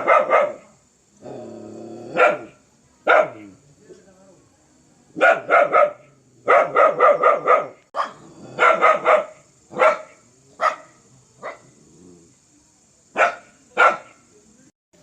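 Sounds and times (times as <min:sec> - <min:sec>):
dog barking: 0:00.0 - 0:00.7, 0:02.1 - 0:03.6, 0:05.2 - 0:11.8, 0:13.2 - 0:14.2.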